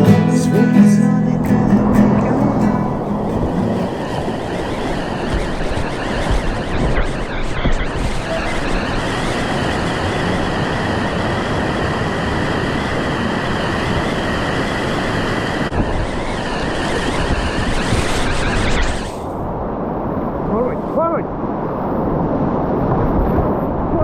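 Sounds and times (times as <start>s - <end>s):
river rapids rushing: 0.0s - 7.3s.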